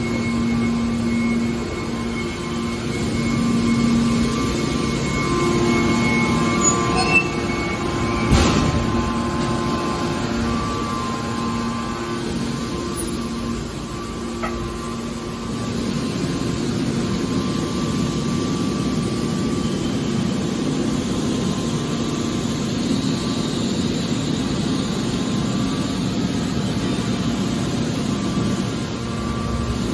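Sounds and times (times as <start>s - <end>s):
hydraulic baler droning: 0.1s - 17.5s.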